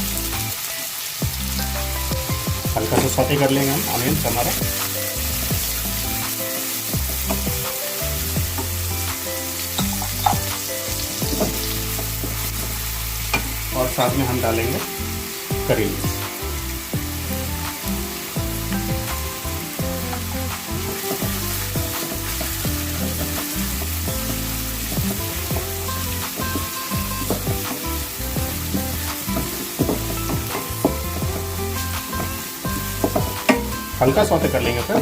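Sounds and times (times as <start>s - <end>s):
onions sizzling in hot oil: 0.0s - 35.0s
spatula scraping and knocking pan: 2.5s - 4.7s, 9.7s - 14.2s, 22.1s - 35.0s.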